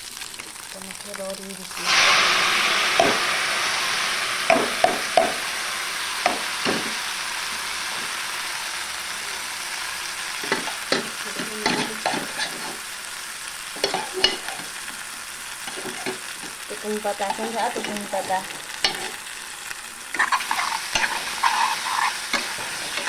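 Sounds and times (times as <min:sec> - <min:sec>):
food sizzling in oil: 0:00.0 - 0:23.0
utensil scraping a pan: 0:10.4 - 0:12.8, 0:13.8 - 0:14.8, 0:15.6 - 0:16.6, 0:20.1 - 0:23.0.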